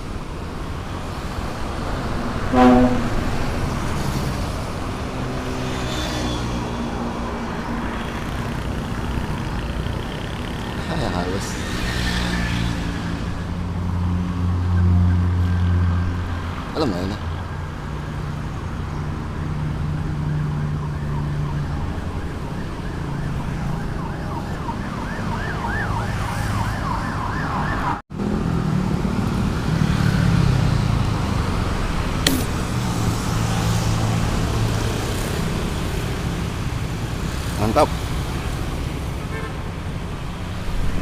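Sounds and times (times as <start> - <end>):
road traffic hum: 0.0 - 41.0
warbling siren-like tone: 19.3 - 28.0
sharp click: 32.2 - 32.6.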